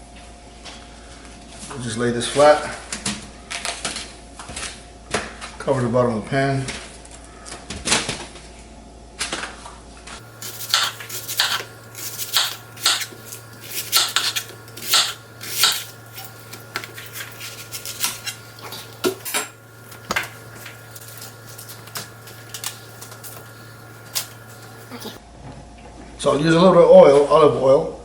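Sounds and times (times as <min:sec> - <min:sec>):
low hum: 0:10.2 - 0:25.2.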